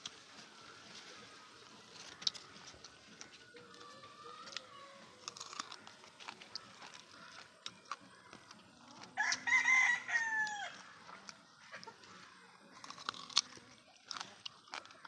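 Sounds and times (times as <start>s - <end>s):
rooster crowing: 9.2s - 10.8s.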